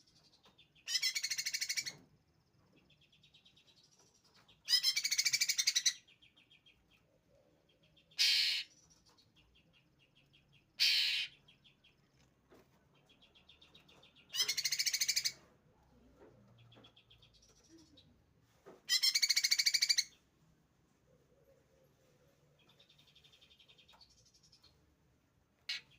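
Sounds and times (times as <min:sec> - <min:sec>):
songbird trilling loudly: 0:08.2 - 0:08.7, 0:10.8 - 0:11.3.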